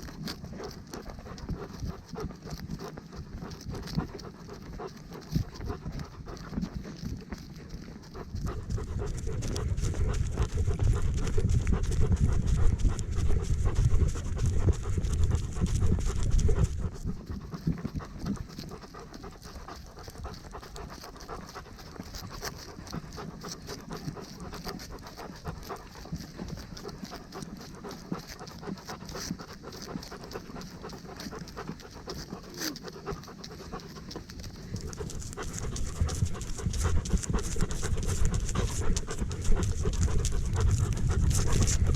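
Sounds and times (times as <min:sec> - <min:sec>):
dog panting: 0:00.0 - 0:41.9
heavy low rumble: 0:08.4 - 0:17.3, 0:34.8 - 0:41.9.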